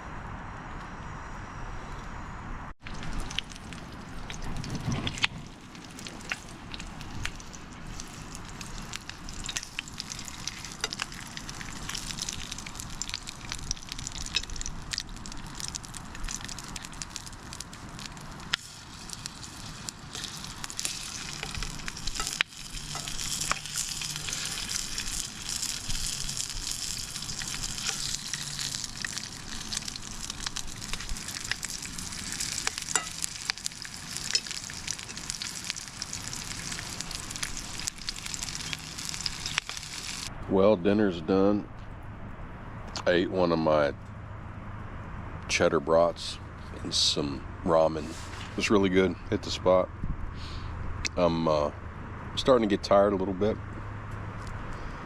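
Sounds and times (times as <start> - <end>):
sausages sizzling over a campfire: 2.8 - 40.3, 46.2 - 49.8.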